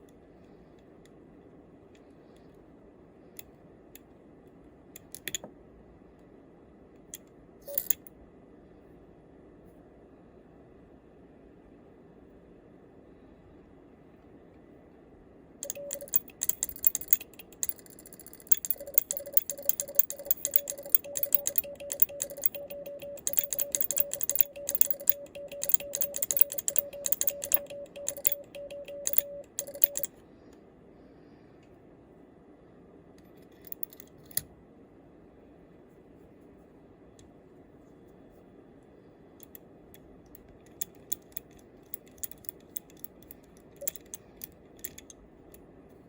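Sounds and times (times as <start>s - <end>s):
morse code beep tone: 15.6s - 17.2s, 18.7s - 30.1s
morse key metallic clicks: 15.6s - 30.1s, 39.4s - 45.2s.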